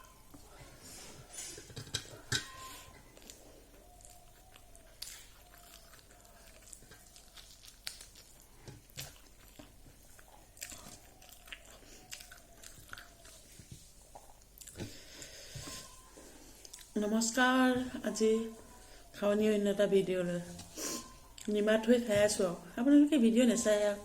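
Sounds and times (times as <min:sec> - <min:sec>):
person chewing and crunching: 0:01.5 - 0:17.0.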